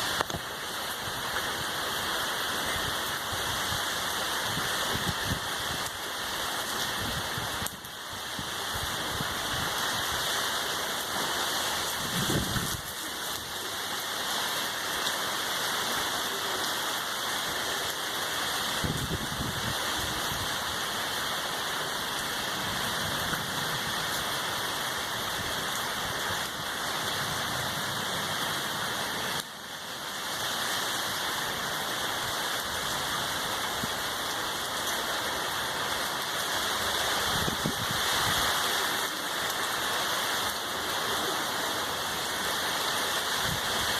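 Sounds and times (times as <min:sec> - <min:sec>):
heavy rain: 0:00.0 - 0:43.9.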